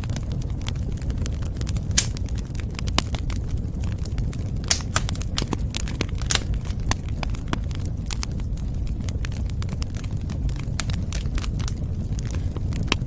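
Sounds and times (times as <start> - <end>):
fire rumbling: 0.0 - 13.0
wood crackling and popping: 0.0 - 13.0.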